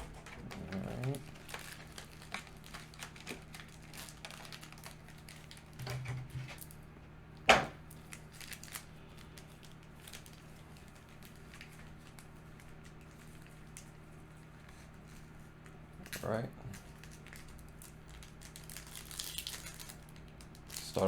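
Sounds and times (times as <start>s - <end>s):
packaging crinkling: 0.0s - 6.8s, 7.7s - 21.0s
sharp knock on table: 7.5s - 7.7s.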